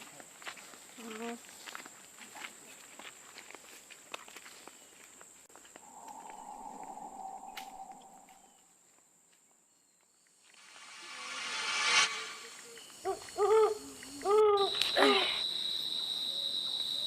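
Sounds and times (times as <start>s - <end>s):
high insect whine: 5.8s - 8.6s.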